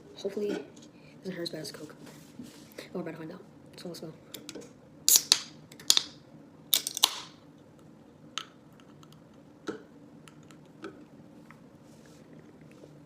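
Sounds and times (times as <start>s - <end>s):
soda can popping open: 5.1s - 7.4s.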